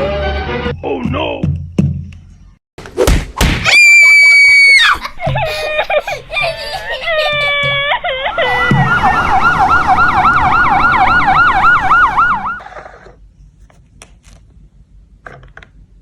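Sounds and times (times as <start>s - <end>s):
ambulance siren yelping: 7.6s - 13.0s.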